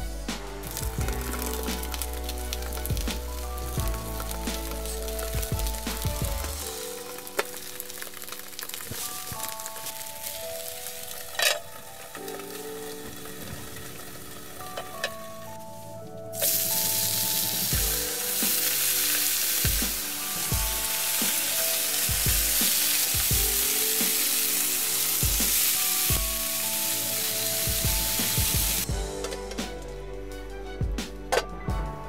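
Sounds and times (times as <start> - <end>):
background music with low beat: 0.0 - 7.6, 11.3 - 32.0
loud steady hiss: 16.4 - 28.9.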